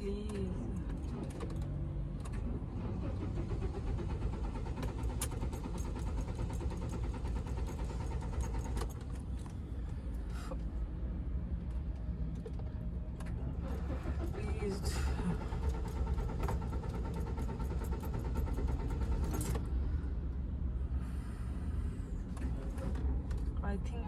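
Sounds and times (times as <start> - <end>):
car engine cranking: 0.1 - 9.6, 13.2 - 19.8.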